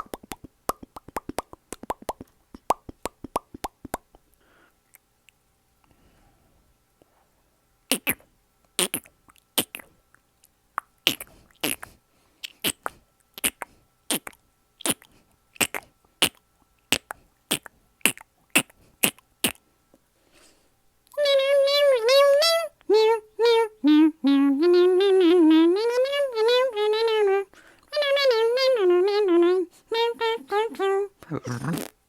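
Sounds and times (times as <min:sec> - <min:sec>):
person making mouth clicks: 0:00.0 - 0:04.3, 0:07.9 - 0:08.2, 0:08.8 - 0:19.6, 0:30.6 - 0:32.0.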